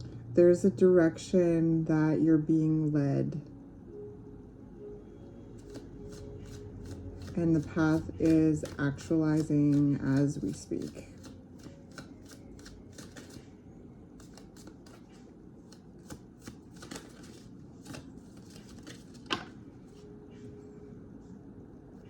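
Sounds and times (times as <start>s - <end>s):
cards being shuffled: 5.6s - 13.5s, 14.2s - 20.0s.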